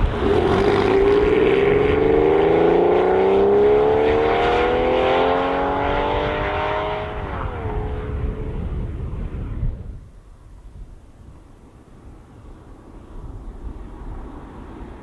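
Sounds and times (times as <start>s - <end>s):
sports car engine accelerating: 0.0s - 9.2s.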